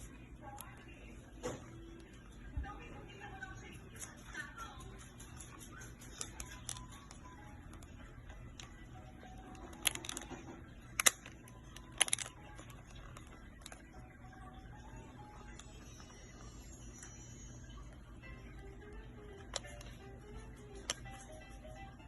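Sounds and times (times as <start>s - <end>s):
sharp plastic clicks: 9.6s - 12.6s.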